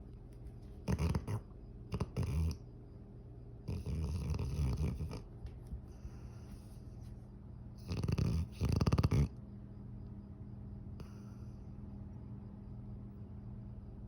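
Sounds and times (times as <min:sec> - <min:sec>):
pet snoring: 0:00.8 - 0:02.6, 0:03.6 - 0:05.3, 0:07.8 - 0:09.4
quiet breathing: 0:05.0 - 0:07.4, 0:10.9 - 0:12.1.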